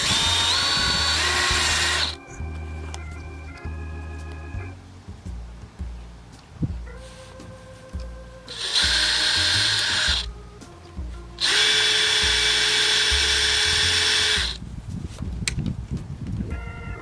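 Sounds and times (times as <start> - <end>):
electric drill drilling: 0.0 - 2.2, 8.5 - 10.3, 11.4 - 14.6.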